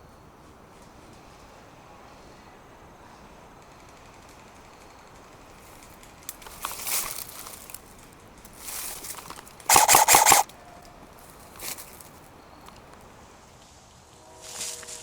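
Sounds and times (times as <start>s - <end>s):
rustling through brush: 5.6s - 10.5s, 11.2s - 12.4s
airsoft gunfire: 9.7s - 10.4s
buzzing mechanical tone: 9.7s - 10.4s.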